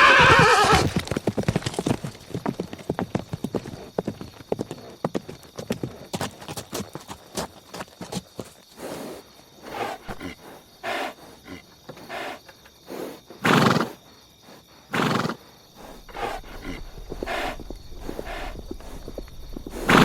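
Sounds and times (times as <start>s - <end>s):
horse neighing: 0.0s - 1.0s, 16.0s - 20.0s.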